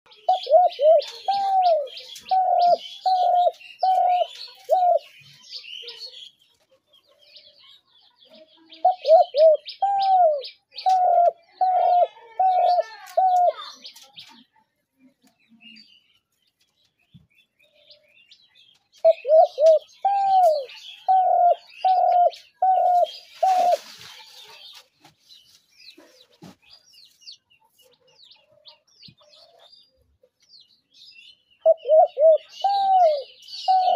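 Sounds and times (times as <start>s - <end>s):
dove cooing: 0.1s - 5.2s, 8.8s - 13.6s, 19.0s - 23.9s, 31.6s - 33.9s
small birds chirping: 0.1s - 33.9s.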